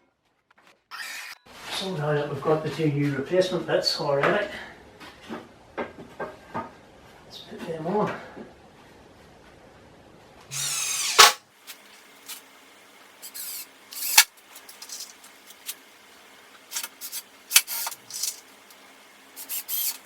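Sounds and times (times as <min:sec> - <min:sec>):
cordless drill driving screws: 0:10.5 - 0:11.4, 0:13.2 - 0:15.2, 0:17.5 - 0:18.4, 0:19.4 - 0:20.0.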